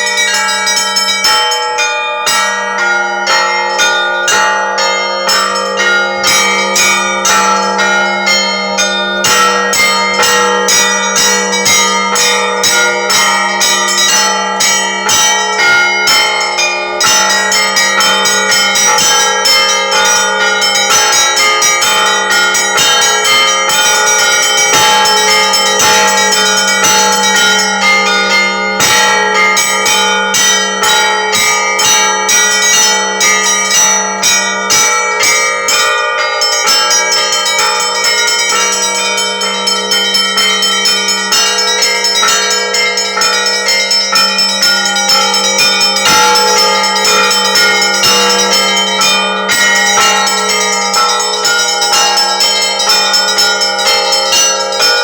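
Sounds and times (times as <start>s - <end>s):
church bells ringing a peal: 0.0s - 55.0s
deep bell humming: 0.0s - 55.0s.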